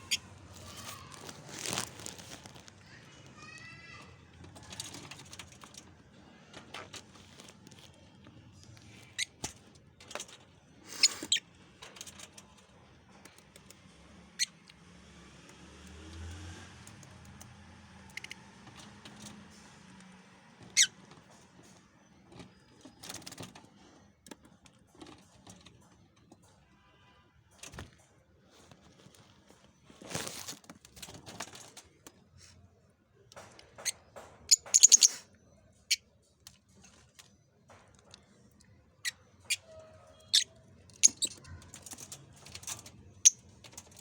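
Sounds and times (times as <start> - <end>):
lovebirds chirping and squeaking: 0.0 - 3.9, 8.5 - 11.8, 18.1 - 18.4, 20.6 - 23.8, 33.4 - 36.1, 38.2 - 44.0
faint rustling: 0.0 - 9.6, 28.3 - 32.6.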